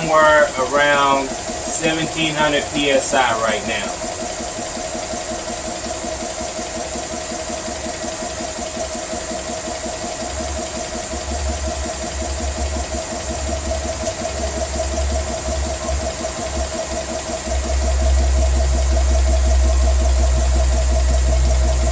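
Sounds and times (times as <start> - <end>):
deeper hum: 0.0 - 4.2, 11.3 - 21.9
air compressor pumping: 0.0 - 21.9.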